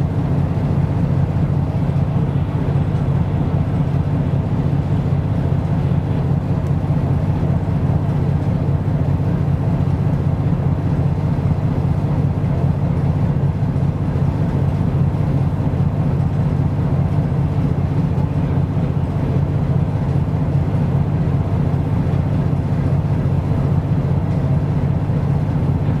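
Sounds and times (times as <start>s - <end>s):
ship engine droning: 0.0s - 26.0s.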